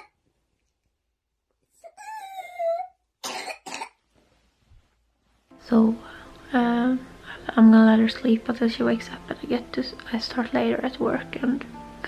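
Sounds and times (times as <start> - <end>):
child coughing: 3.2 - 4.0
strained wavering breath: 6.0 - 6.5.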